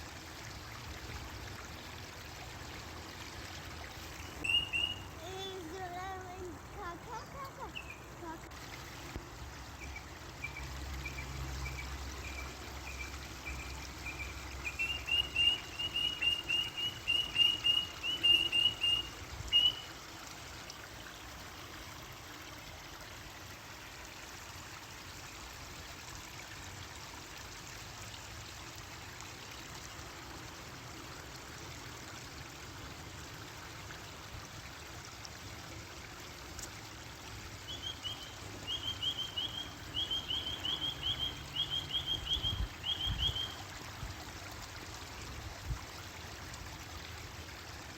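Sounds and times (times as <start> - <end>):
water rushing: 0.0 - 47.9
bird chirping: 4.2 - 5.1, 9.8 - 19.9, 37.7 - 43.6.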